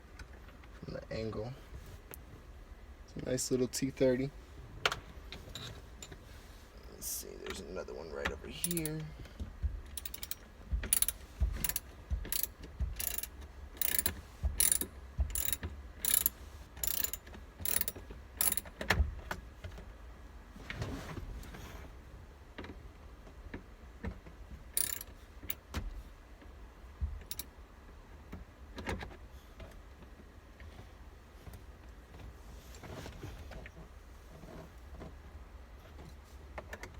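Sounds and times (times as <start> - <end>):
hand ratchet clicking: 8.6 - 9.1, 9.9 - 18.7, 24.8 - 25.6, 27.2 - 27.4.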